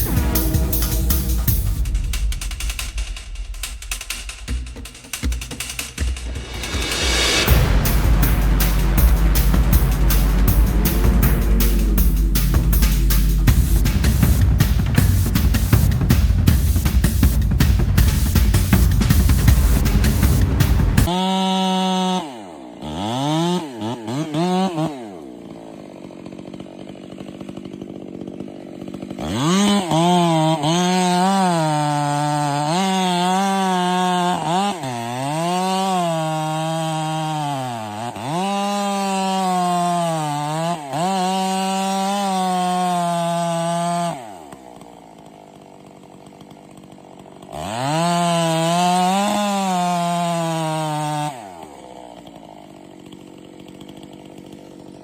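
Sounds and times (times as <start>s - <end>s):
chainsaw revving: 0.0s - 55.0s.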